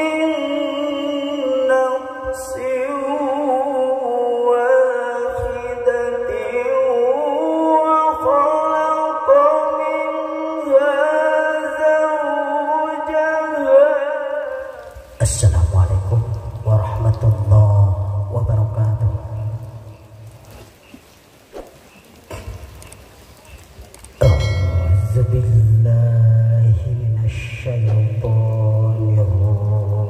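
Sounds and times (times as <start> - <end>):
person chanting melody: 0.0 - 15.4, 24.2 - 30.0.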